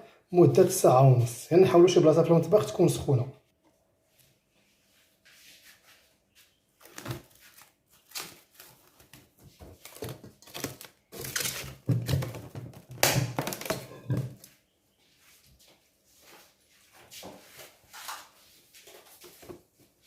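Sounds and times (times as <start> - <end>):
cling film crinkling: 6.8 - 12.2.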